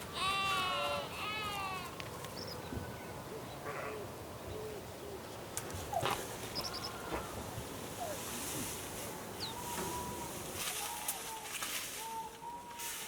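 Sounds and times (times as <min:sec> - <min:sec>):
farm animals calling: 0:00.0 - 0:02.6, 0:05.9 - 0:08.3, 0:09.3 - 0:13.0.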